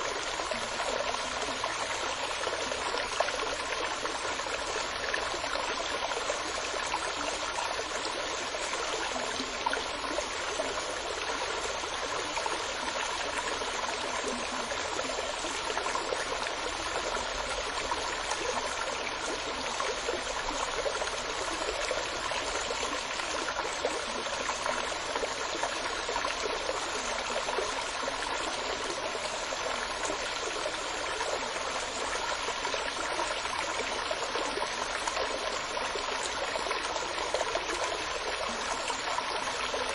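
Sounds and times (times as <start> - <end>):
water flowing in a stream: 0.0 - 39.9.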